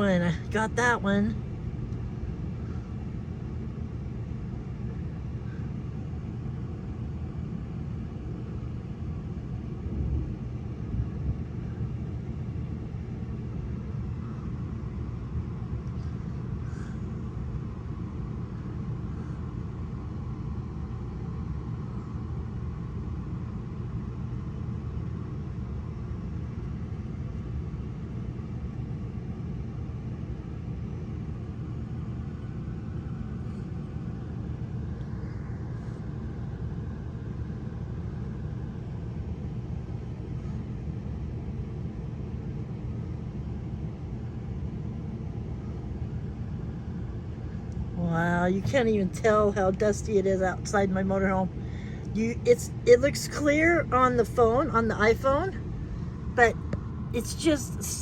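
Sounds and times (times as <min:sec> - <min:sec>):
strong wind buffeting vehicle: 0:09.6 - 0:12.2.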